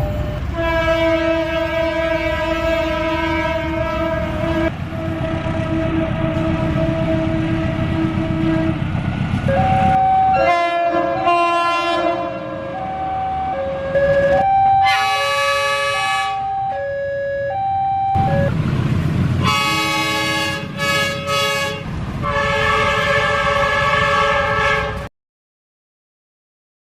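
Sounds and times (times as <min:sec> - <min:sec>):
locomotive air horns: 0:00.0 - 0:08.9, 0:09.5 - 0:18.5, 0:19.4 - 0:25.1
low engine rumble: 0:00.0 - 0:11.3, 0:17.3 - 0:25.1.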